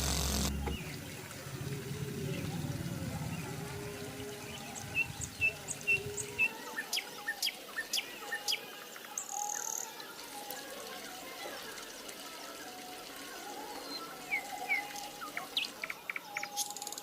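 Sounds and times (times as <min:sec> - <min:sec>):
low rumble: 0:00.0 - 0:06.4
small birds chirping: 0:00.0 - 0:10.0.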